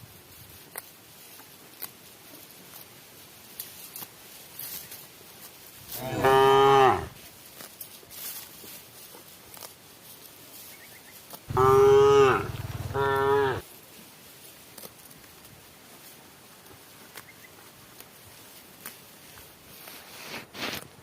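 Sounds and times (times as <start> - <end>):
cattle mooing: 5.9 - 7.2, 11.5 - 13.6
cattle shuffling and knocking: 11.5 - 13.5.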